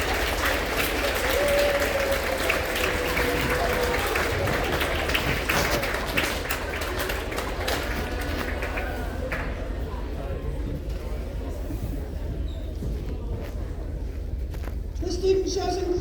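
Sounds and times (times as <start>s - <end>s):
audience applauding: 0.0s - 10.2s.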